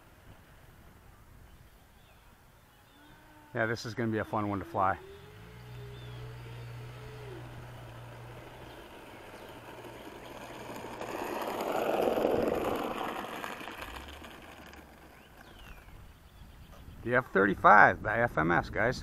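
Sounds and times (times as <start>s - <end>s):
electric ducted fan whine: 2.5s - 17.1s.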